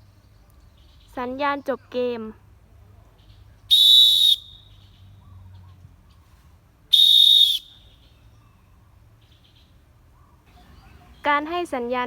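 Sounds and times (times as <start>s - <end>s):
referee's whistle blast: 7.0s - 7.8s.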